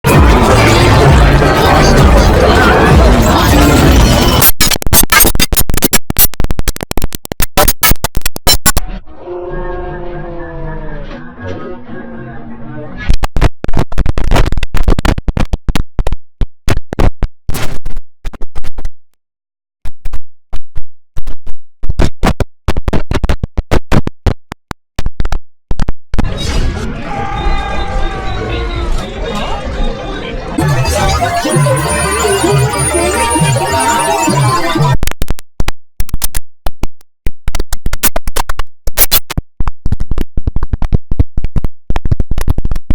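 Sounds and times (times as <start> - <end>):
stuttering glitched sound effect: 0.1 - 8.9, 27.9 - 35.2, 37.8 - 39.4.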